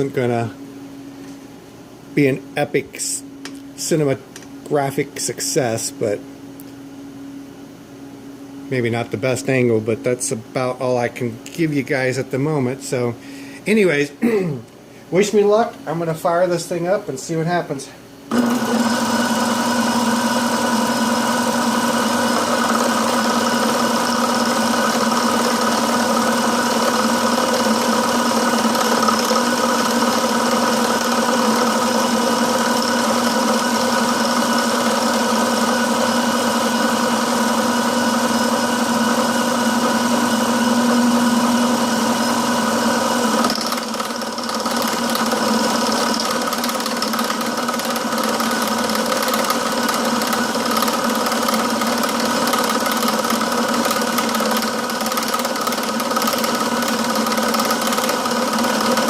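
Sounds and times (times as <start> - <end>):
milling machine droning: 18.3 - 59.0.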